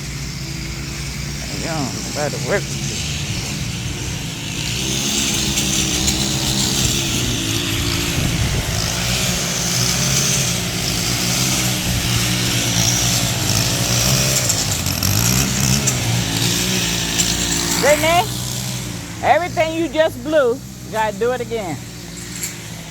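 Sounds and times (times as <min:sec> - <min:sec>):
leaf blower running: 0:00.0 - 0:22.9.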